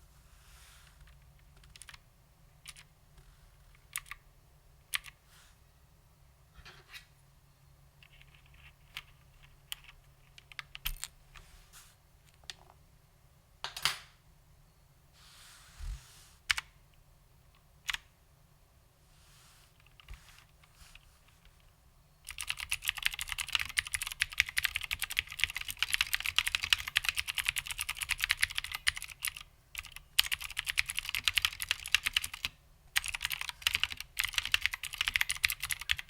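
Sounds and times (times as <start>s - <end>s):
mechanical keyboard keys clicking: 1.6s - 2.0s, 2.6s - 2.9s, 4.9s - 5.2s, 22.3s - 36.0s.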